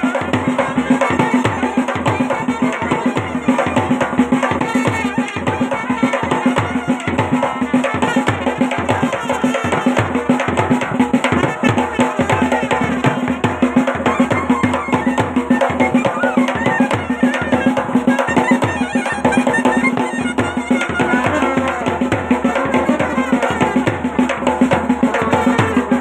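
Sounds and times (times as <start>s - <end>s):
drums beating quick rhythm: 0.0s - 26.0s
folk band playing: 0.0s - 26.0s.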